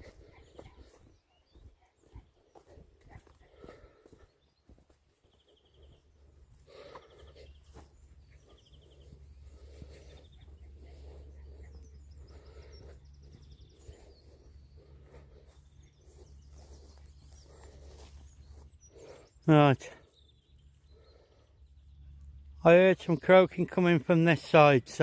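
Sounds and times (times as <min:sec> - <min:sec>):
birdsong: 0:00.0 - 0:25.0
steady low rumble: 0:06.0 - 0:19.4.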